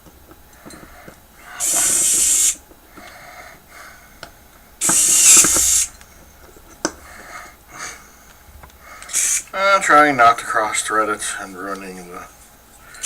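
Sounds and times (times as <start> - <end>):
soft in-breaths: 0.5 - 9.5, 12.3 - 13.0
man breathing out through nose: 0.6 - 4.2, 7.0 - 9.5.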